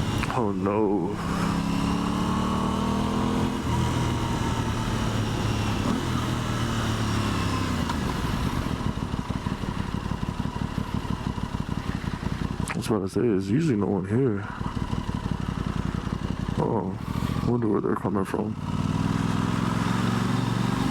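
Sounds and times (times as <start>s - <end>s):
motorcycle engine running: 0.0s - 20.9s.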